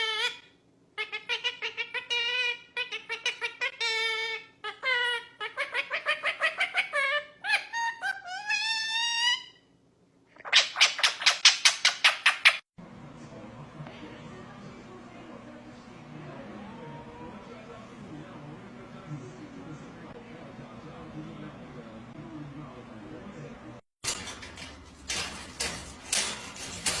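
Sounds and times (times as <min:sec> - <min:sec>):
parrot calling laugh-like notes: 0:01.0 - 0:09.5.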